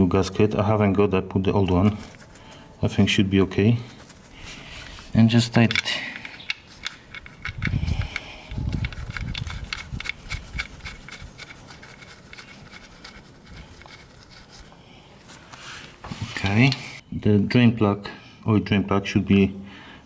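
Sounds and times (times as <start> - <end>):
metallic clicks and taps: 5.6 - 10.7.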